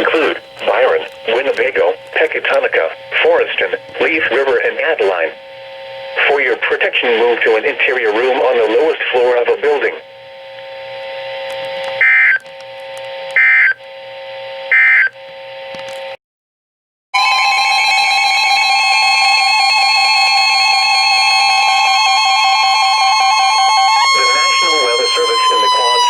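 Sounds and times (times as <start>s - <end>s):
low radio hum: 0.0s - 16.2s, 23.1s - 26.0s
two-tone attention alarm: 12.0s - 12.5s, 13.3s - 13.8s, 14.7s - 15.2s, 17.2s - 26.0s
digital data bursts: 21.4s - 26.0s.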